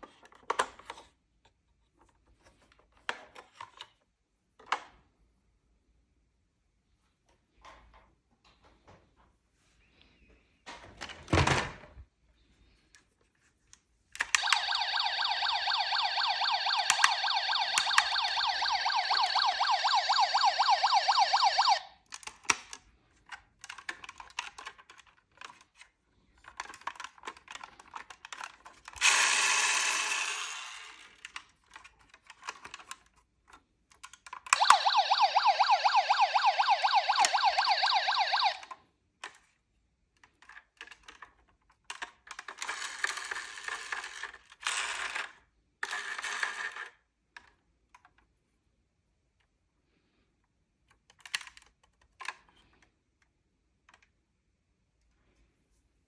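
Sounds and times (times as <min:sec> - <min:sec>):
toy siren pulsing tone: 0:14.4 - 0:21.9, 0:34.6 - 0:38.7.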